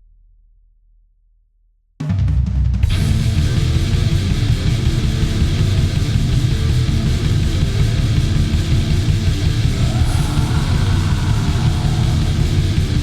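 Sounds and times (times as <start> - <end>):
distorted electric guitars: 2.9 - 13.0
drums playing: 9.6 - 13.0.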